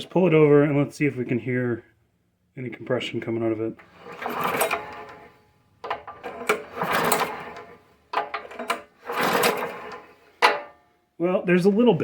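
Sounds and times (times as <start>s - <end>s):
recoil starter rope whirring: 3.8s - 5.4s, 6.2s - 7.8s, 8.7s - 10.3s.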